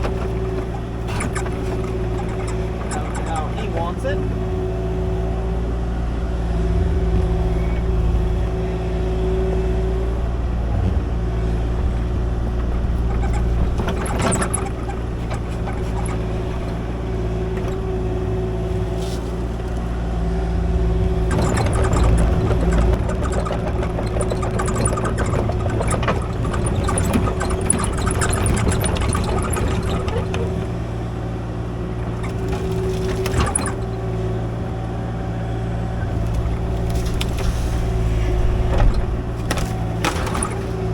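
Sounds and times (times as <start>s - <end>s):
excavator diesel engine running: 0.0s - 40.9s
bucket scraping dirt: 36.1s - 40.9s.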